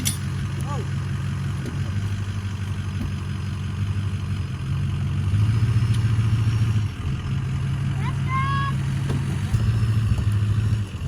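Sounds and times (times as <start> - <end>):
truck engine running: 0.0 - 11.0.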